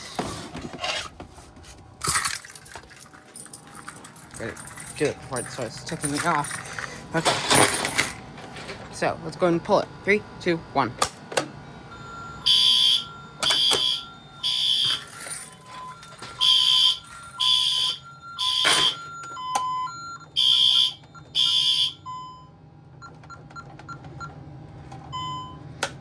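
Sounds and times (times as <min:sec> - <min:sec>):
fire alarm horns pulsing: 0:09.4 - 0:23.6
alarm keypad beeps: 0:11.9 - 0:24.3, 0:25.1 - 0:25.6.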